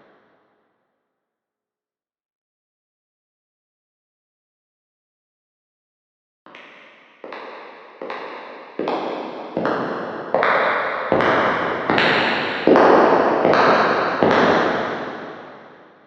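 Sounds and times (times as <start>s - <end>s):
echoing footsteps: 6.5s - 15.8s.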